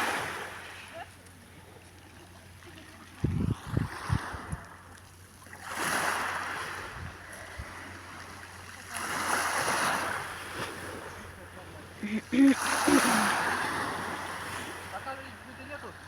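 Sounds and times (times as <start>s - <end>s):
sea waves washing ashore: 0.0s - 16.0s
wind buffeting microphone: 3.2s - 4.6s.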